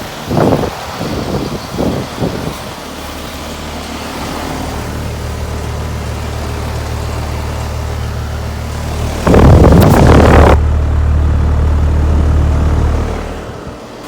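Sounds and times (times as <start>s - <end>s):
compressor hum: 0.0s - 14.0s
condenser fans rushing: 0.0s - 14.0s
air blasting across microphone: 7.3s - 10.6s.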